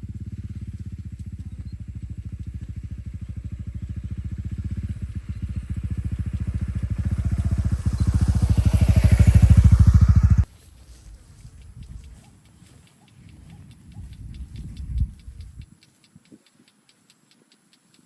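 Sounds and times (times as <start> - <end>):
engine puttering: 0.0 - 15.8.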